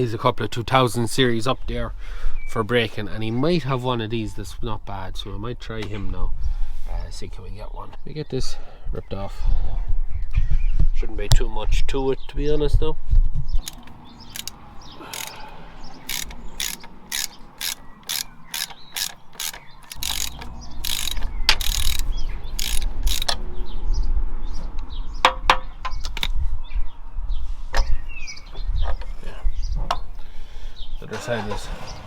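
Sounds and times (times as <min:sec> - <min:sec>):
ratchet wrench clicking: 0:13.6 - 0:23.4.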